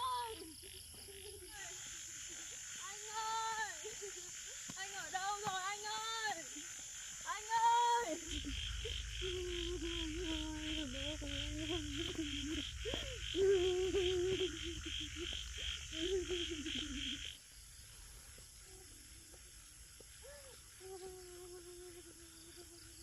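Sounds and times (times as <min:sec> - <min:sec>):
frogs and insects chorus: 0:00.0 - 0:23.0
low hum: 0:08.0 - 0:17.4
wavering low tone: 0:08.3 - 0:17.2.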